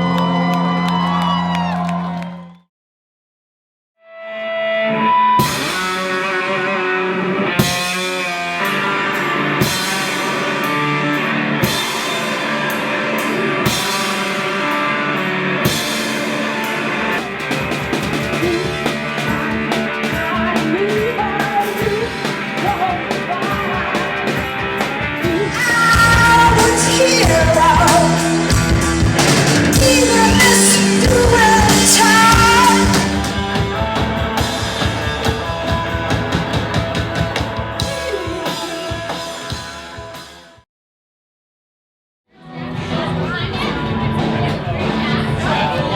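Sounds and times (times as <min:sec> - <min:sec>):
rock band playing: 0:04.6 - 0:40.6, 0:42.5 - 0:45.9
drum crashes: 0:21.9 - 0:40.5.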